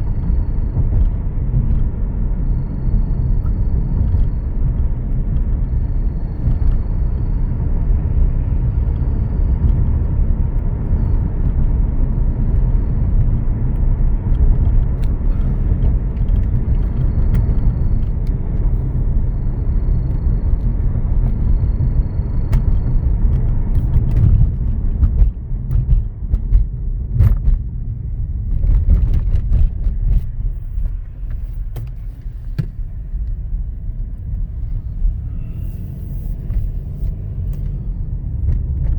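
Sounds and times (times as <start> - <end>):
car engine rumble: 0.0 - 38.9.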